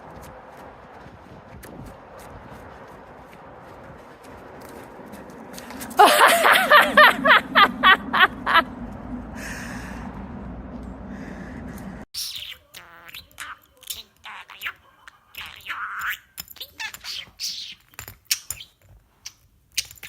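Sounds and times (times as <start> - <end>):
person laughing hard: 5.8 - 8.7.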